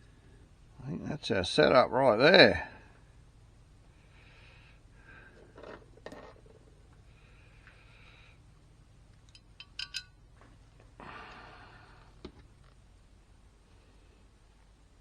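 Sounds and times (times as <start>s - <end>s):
faint steady hum: 0.0s - 15.0s
small metal parts clinking: 9.3s - 10.2s
breathy exhale: 11.0s - 12.2s.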